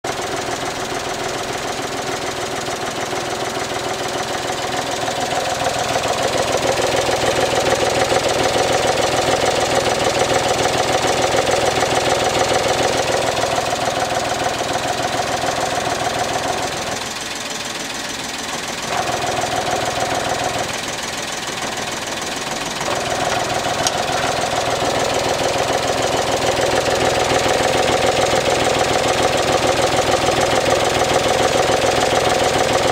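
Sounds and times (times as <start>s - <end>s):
car engine idling: 0.0s - 32.9s
air cleaner box rattling: 22.8s - 25.9s.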